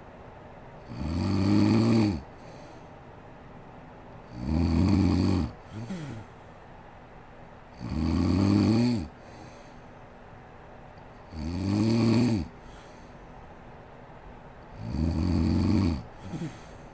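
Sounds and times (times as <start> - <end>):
woman snoring: 0.9 - 2.5, 4.3 - 6.3, 7.8 - 9.1, 11.3 - 12.6, 14.8 - 16.7
soft snort: 4.3 - 6.5, 11.3 - 13.1, 14.8 - 16.9.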